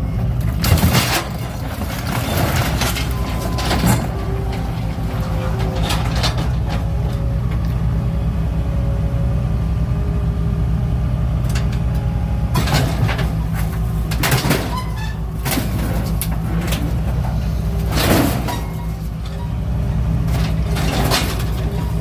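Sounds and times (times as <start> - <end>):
heavy engine running: 0.0 - 22.0
metal crashes and scrapes: 0.4 - 7.2, 12.5 - 19.5, 20.2 - 22.0.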